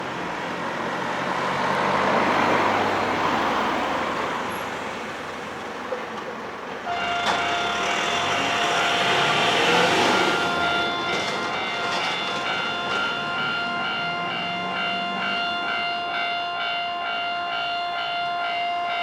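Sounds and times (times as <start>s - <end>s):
train passing over rails: 0.0s - 19.0s
level crossing bell ringing: 6.9s - 19.0s.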